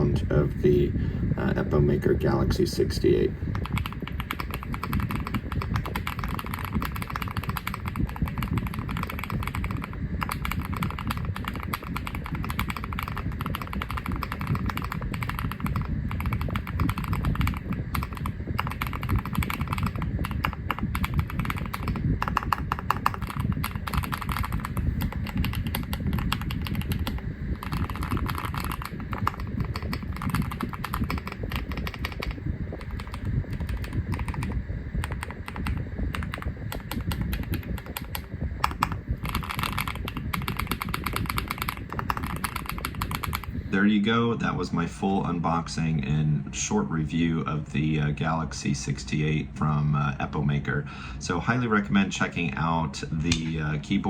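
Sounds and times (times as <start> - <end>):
mechanical keyboard typing: 3.5 - 43.5.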